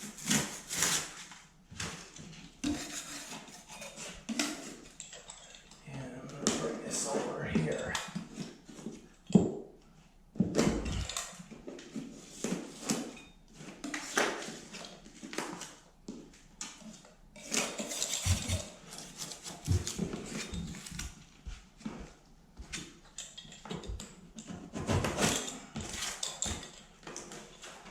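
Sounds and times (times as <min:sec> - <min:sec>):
blade scraping paper off drywall: 0:00.0 - 0:01.4, 0:02.6 - 0:04.1.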